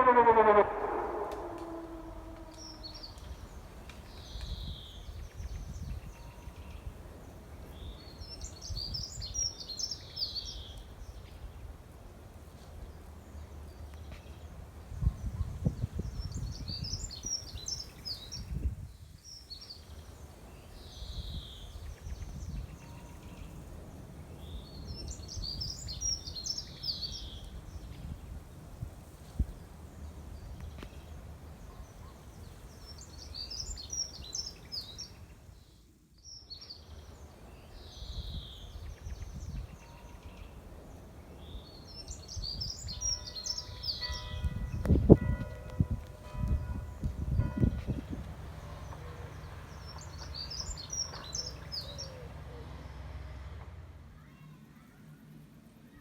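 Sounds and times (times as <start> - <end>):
bird call notes: 0.0 - 3.5
outdoor low rumble: 0.0 - 4.0.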